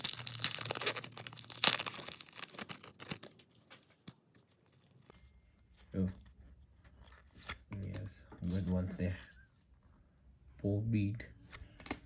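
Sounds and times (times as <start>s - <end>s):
foil wrapper tearing and crinkling: 0.0s - 4.2s.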